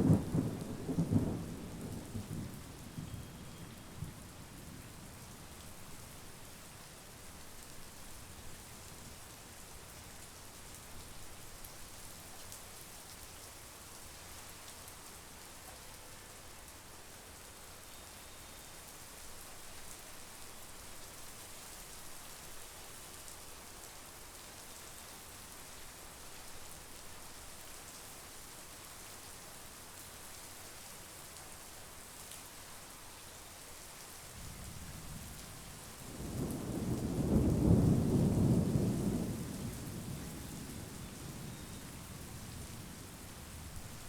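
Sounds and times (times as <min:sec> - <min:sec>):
steady rain falling: 0:00.0 - 0:44.0
distant thunder rumbling: 0:36.1 - 0:43.8.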